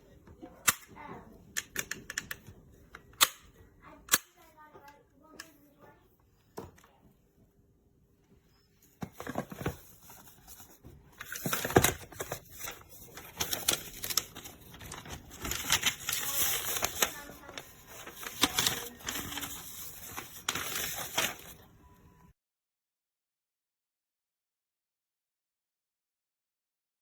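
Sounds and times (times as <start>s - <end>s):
handling rustling and clicks: 9.0s - 21.6s.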